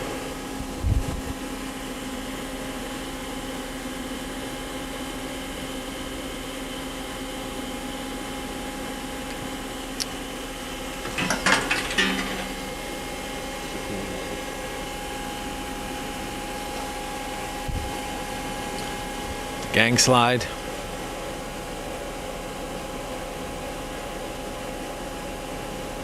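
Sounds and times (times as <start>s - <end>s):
lathe humming and whining: 0.0s - 26.0s
mechanical clunks and rattles: 11.0s - 12.7s.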